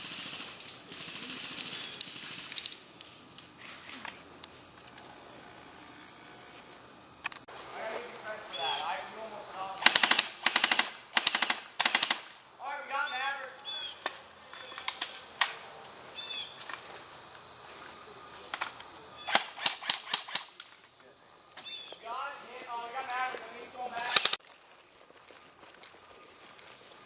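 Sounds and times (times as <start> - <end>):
cricket chirring: 0.0 - 27.0
airsoft guns firing: 9.8 - 12.4, 19.2 - 20.7, 23.9 - 24.4.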